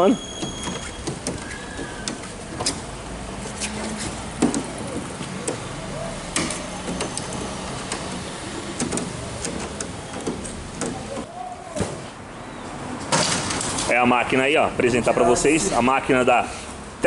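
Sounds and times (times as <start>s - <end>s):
knocks and clicks: 0.4s - 2.9s, 3.8s - 5.7s, 6.3s - 11.3s.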